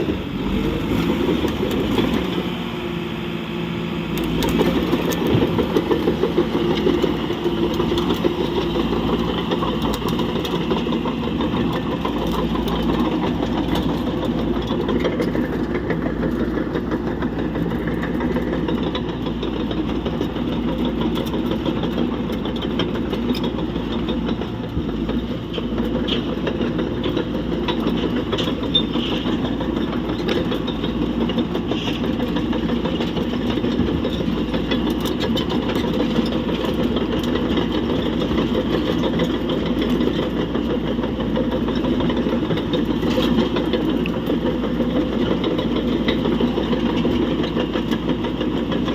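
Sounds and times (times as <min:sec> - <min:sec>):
diesel engine idling: 0:00.0 - 0:48.9.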